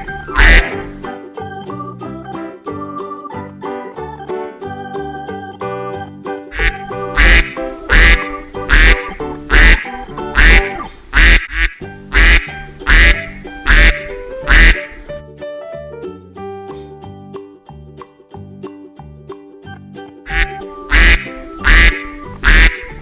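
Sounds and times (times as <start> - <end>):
duck quacking: 0.0 - 0.9, 6.5 - 15.0, 20.3 - 23.0
cheerful background music: 0.0 - 10.8, 11.8 - 23.0.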